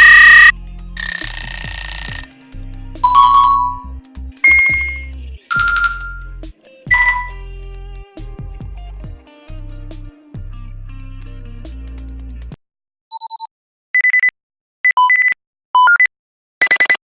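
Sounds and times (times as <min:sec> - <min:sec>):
electronic ringing and dings: 0:00.0 - 0:07.4, 0:14.9 - 0:17.0
background music: 0:00.6 - 0:12.5.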